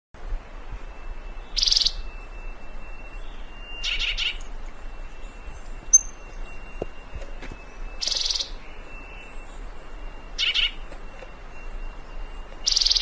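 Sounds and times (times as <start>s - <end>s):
bird buzzy trilled call: 3.7s - 4.8s, 5.4s - 6.4s, 8.0s - 8.6s.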